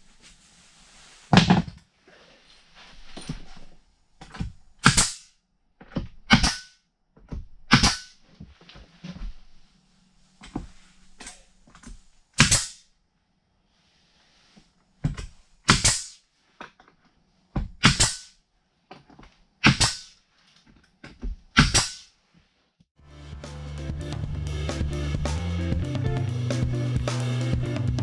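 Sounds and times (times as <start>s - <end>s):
nail gun shots: 4.8s - 5.3s, 6.3s - 6.7s, 7.7s - 8.1s, 12.4s - 12.8s, 15.7s - 16.2s, 17.8s - 18.3s, 19.6s - 20.1s, 21.6s - 22.0s.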